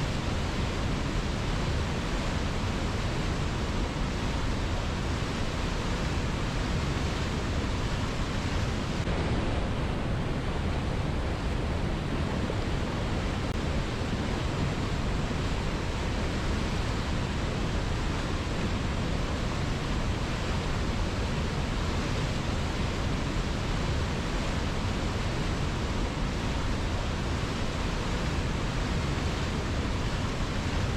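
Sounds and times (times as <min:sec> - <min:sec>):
river water rushing: 0:00.0 - 0:30.9.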